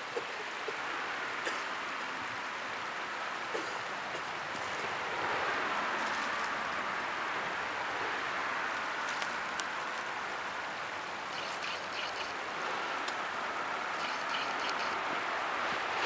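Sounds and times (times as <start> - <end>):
creek water rushing: 0.0 - 16.0
small clicks and taps: 9.1 - 9.7.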